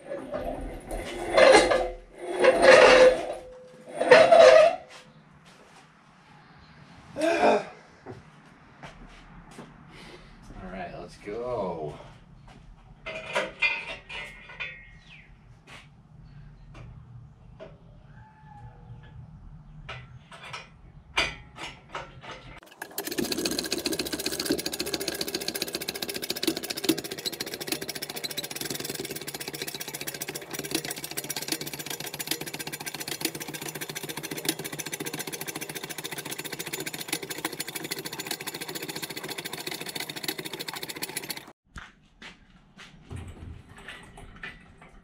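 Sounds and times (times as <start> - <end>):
machine running loud: 22.6 - 41.5.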